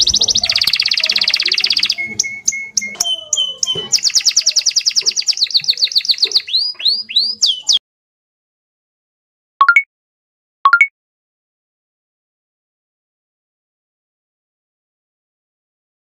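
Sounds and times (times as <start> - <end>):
bird singing trills and whistles: 0.0 - 7.8.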